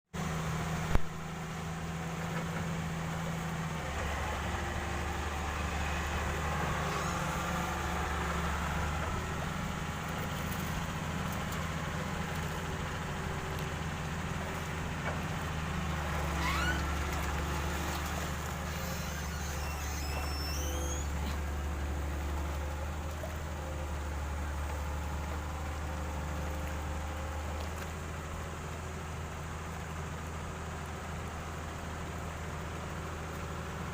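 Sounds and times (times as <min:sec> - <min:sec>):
excavator diesel engine: 0:00.2 - 0:33.9
high squealing glides: 0:05.1 - 0:09.2, 0:15.9 - 0:21.7.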